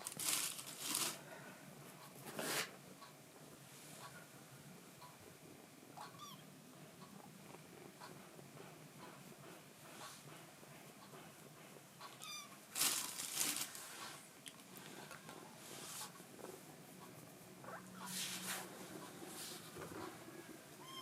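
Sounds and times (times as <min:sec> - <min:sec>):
kitten squeaking: 0:06.0 - 0:06.5, 0:12.0 - 0:12.5, 0:17.6 - 0:18.2, 0:20.8 - 0:21.0.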